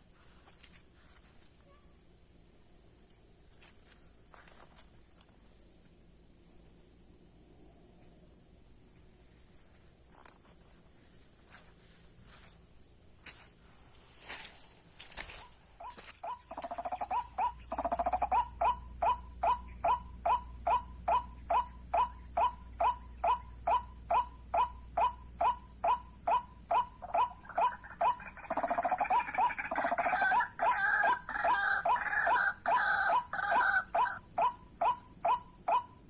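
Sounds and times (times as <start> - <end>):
waterhen calling: 26.7 - 35.8.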